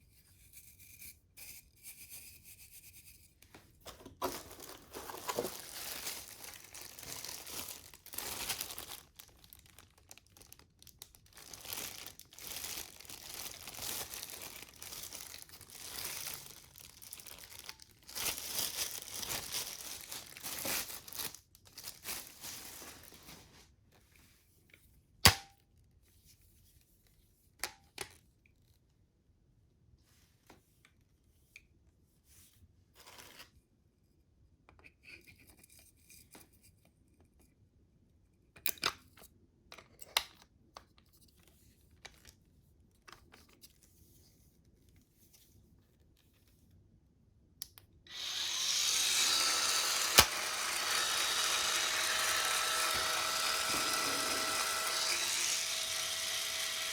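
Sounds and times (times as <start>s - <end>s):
parts crinkling: 3.9s - 23.6s
spin scrubber motor whirring: 48.1s - 56.9s.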